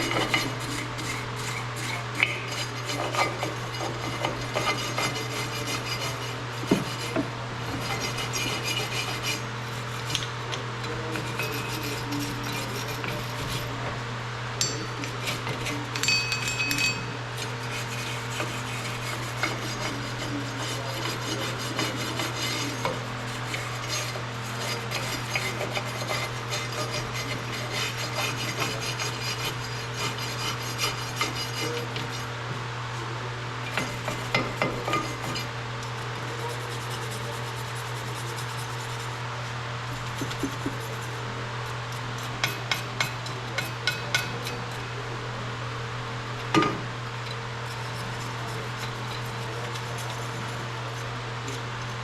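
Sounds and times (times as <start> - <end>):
hand scraping on metal: 0.0 - 10.3, 10.9 - 13.8, 17.4 - 32.4, 47.6 - 51.1
steady low hum: 0.0 - 52.0
metallic clinks and knocks: 16.0 - 17.1.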